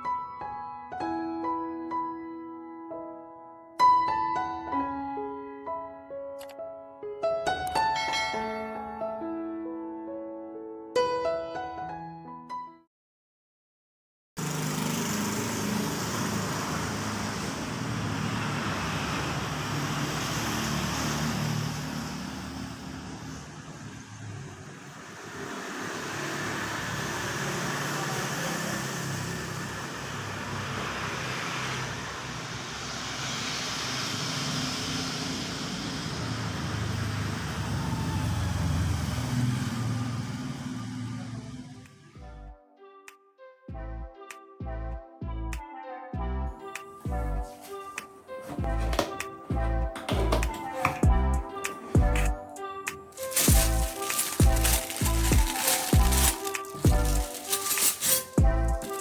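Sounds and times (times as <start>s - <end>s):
vehicles passing: 14.4s - 41.8s, 47.0s - 59.0s.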